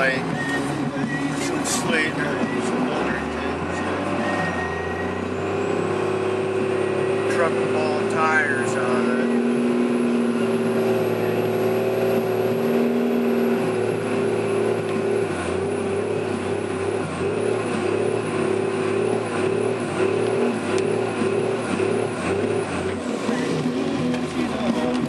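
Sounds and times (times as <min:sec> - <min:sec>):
diesel engine idling: 0:00.0 - 0:25.0.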